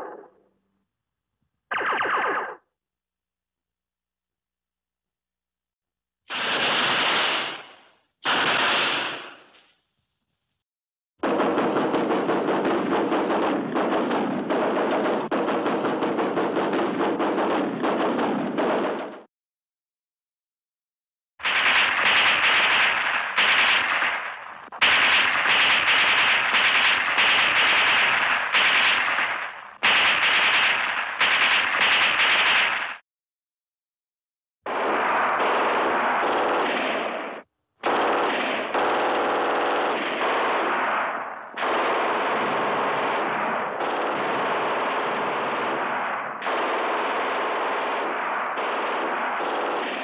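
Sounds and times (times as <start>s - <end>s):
automatic gunfire: 1.7s - 2.6s, 6.3s - 9.5s, 11.2s - 19.3s, 21.4s - 33.0s, 34.7s - 50.0s.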